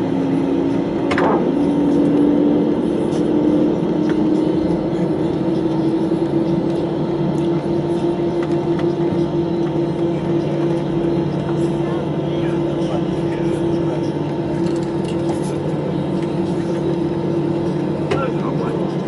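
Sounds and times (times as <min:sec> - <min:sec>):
jet engines rumbling: 0:00.0 - 0:19.0.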